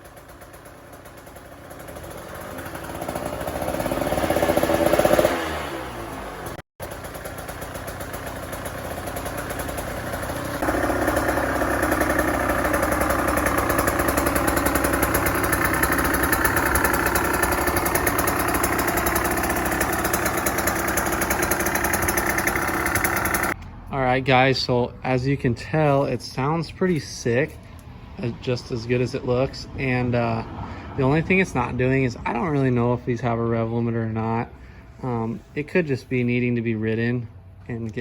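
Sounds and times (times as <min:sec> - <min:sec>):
two-stroke engine revving: 0:00.0 - 0:23.6.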